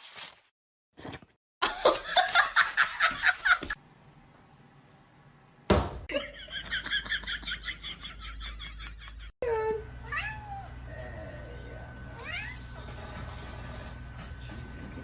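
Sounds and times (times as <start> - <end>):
sharp knock: 5.7 - 6.1.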